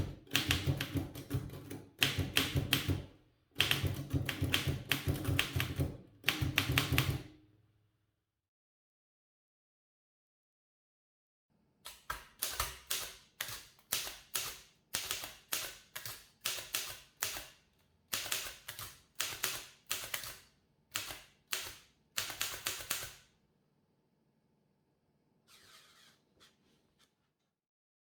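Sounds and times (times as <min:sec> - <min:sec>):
typewriter typebars striking: 0:00.0 - 0:07.3.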